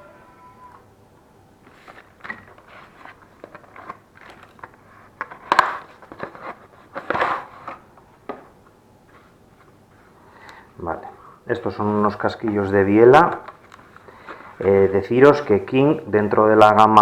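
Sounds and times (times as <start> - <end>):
packaging rustling and crackling: 1.6 - 10.2, 11.5 - 16.6.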